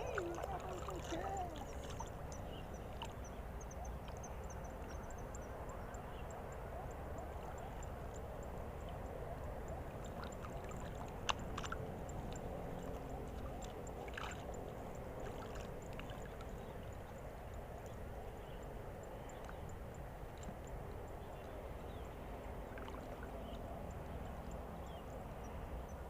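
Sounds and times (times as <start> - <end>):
moving water at shore: 0.0 - 26.0.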